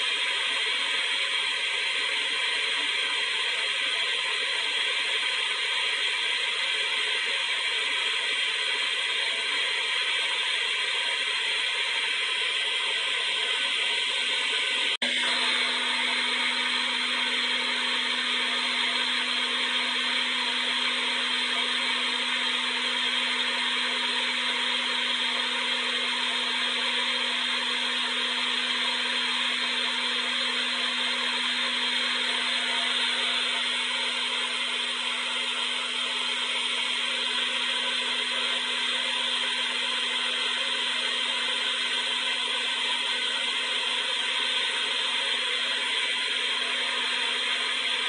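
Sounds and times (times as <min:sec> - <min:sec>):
hair dryer blowing air: 0:00.0 - 0:48.0
low motor hum: 0:15.0 - 0:42.2.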